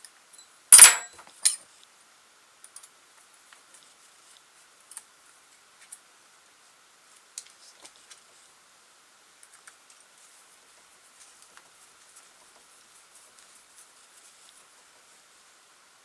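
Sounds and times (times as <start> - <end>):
low steady hiss: 0.0 - 16.0.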